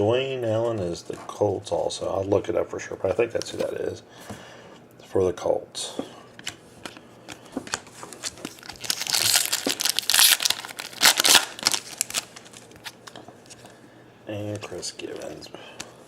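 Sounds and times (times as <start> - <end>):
foil wrappers crinkling: 6.8 - 13.7.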